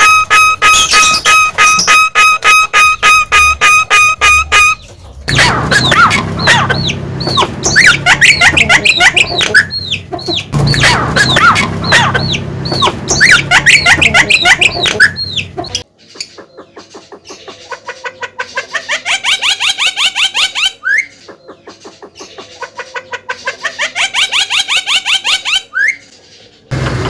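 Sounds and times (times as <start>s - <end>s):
myna bird chattering whistles: 0.0s - 16.6s.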